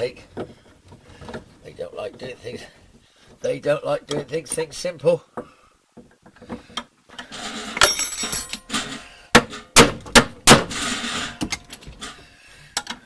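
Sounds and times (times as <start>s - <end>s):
metal clanking and clinking: 7.2s - 9.8s.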